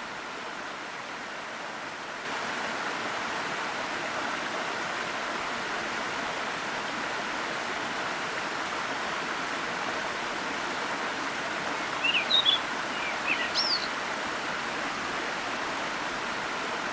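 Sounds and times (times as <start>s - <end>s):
waterfall rushing: 2.2s - 16.9s
small bird chirping: 12.0s - 13.9s.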